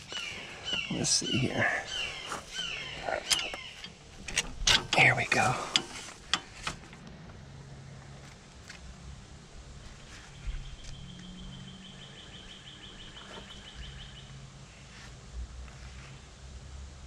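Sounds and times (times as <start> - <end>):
bird trilling: 0.0 - 4.0, 10.4 - 14.4
low hum: 0.0 - 17.0.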